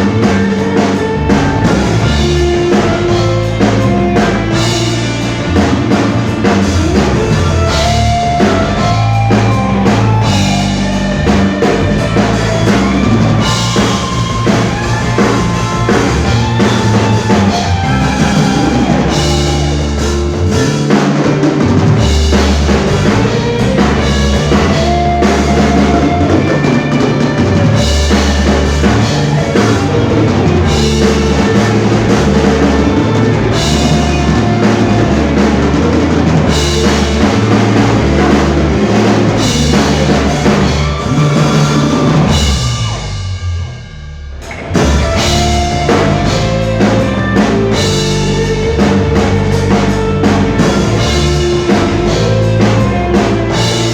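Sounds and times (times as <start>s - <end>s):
bass line: 0.0s - 53.9s
drum kit beat: 0.0s - 53.9s
live band playing: 0.0s - 53.9s.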